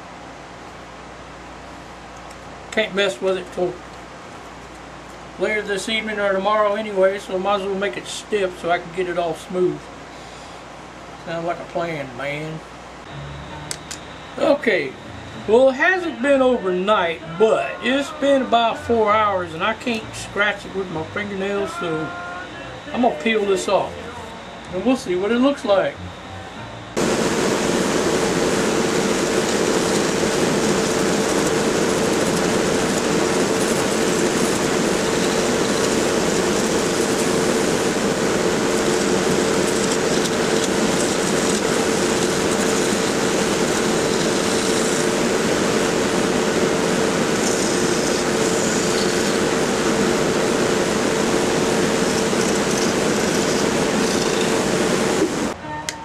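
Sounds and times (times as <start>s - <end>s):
shop machine running: 13.0s - 55.6s.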